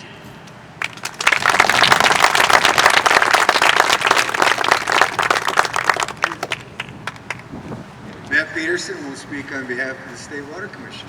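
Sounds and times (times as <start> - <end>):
audience applauding: 0.8 - 7.6.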